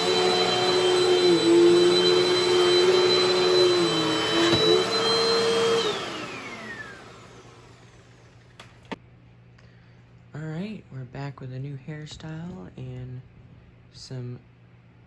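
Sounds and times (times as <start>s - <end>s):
vacuum cleaner motor whine: 0.0s - 8.7s.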